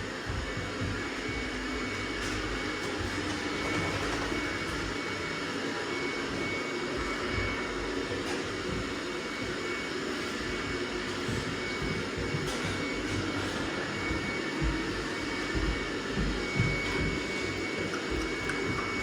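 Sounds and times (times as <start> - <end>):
robot vacuum cleaner whirring: 0.1 - 19.0.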